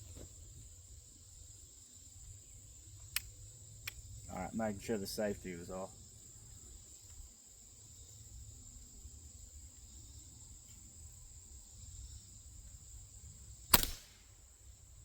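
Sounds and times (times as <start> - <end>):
insects trilling: 0.0 - 15.0
air rifle shot: 13.7 - 14.3.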